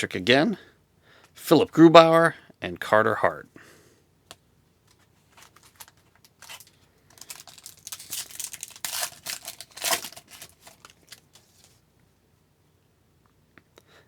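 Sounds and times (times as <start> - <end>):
foil wrapper tearing and crinkling: 5.3 - 11.8.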